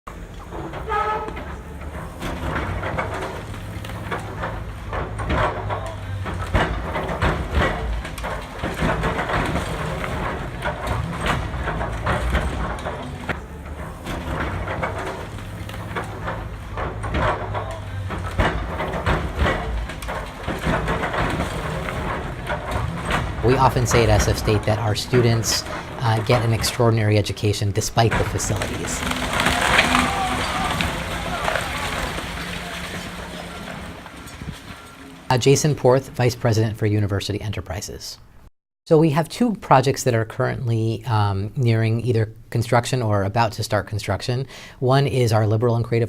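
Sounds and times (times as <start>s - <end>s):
heavy machine engine humming: 0.1s - 36.2s
clanks knocks and crunching: 0.1s - 36.3s.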